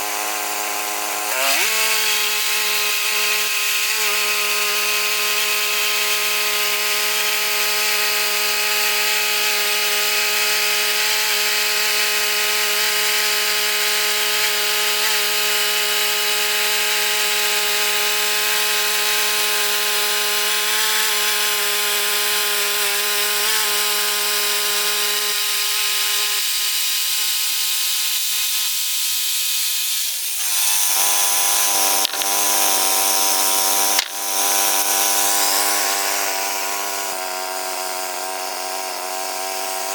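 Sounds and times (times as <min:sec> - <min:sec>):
band saw cutting log: 0:00.0 - 0:39.9
sawmill engine running: 0:30.2 - 0:38.6.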